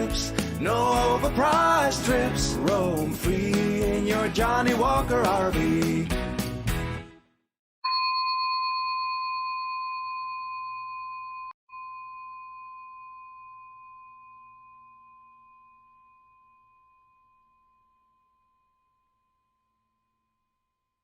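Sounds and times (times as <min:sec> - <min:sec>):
bell-like chime: 0:07.8 - 0:20.6.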